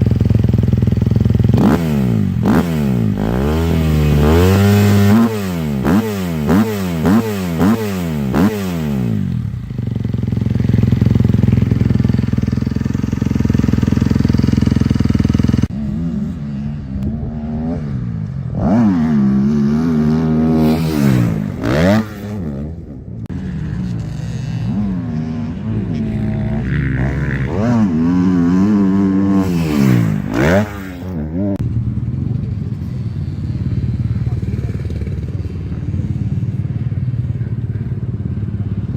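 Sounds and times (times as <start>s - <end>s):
motorcycle engine revving and idling: 0.0s - 38.9s.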